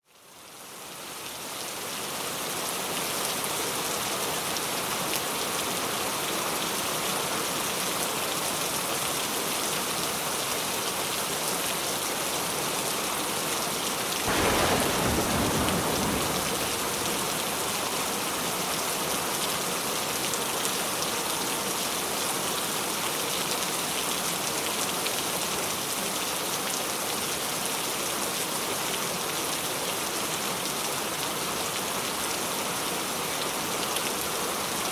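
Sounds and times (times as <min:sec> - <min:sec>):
low rumble: 0:14.3 - 0:17.9
heavy rain falling: 0:14.3 - 0:18.4.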